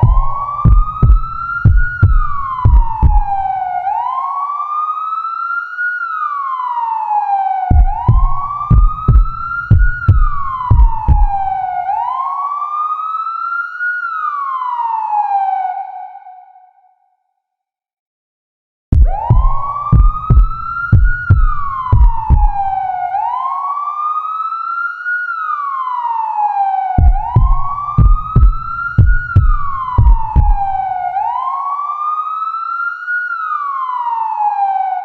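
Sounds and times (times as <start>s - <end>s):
low thumps: 0.0s - 3.5s, 7.7s - 11.6s, 19.0s - 22.8s, 27.0s - 31.0s
wailing siren: 0.0s - 17.2s, 19.0s - 35.0s.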